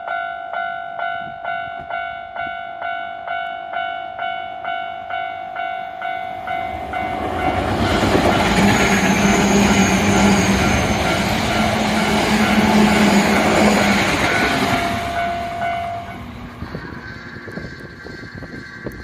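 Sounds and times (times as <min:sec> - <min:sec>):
train wheels rumbling on rails: 0:06.2 - 0:19.0
level crossing bell ringing: 0:09.8 - 0:16.2.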